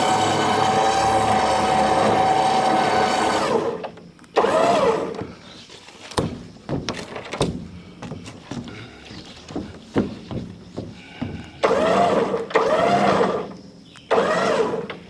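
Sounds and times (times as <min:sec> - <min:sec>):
machine whining: 0:00.0 - 0:05.3, 0:11.6 - 0:15.0
sharp knocks: 0:06.1 - 0:08.8.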